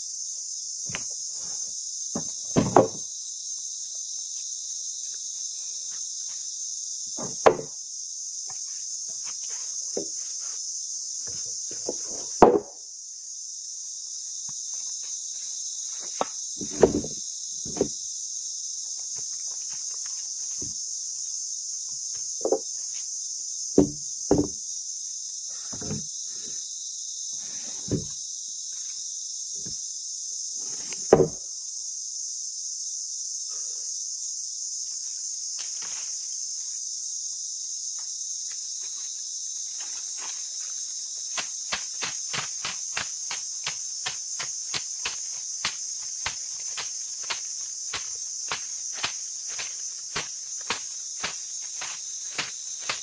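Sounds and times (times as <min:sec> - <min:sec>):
insects chorus: 0:00.0 - 0:53.0
wooden knocks and thumps: 0:02.1 - 0:03.0, 0:07.2 - 0:07.7, 0:10.0 - 0:10.2, 0:11.2 - 0:12.8, 0:16.6 - 0:17.9, 0:22.4 - 0:22.6, 0:23.8 - 0:24.6, 0:25.7 - 0:26.1, 0:27.9 - 0:28.2, 0:31.1 - 0:31.4.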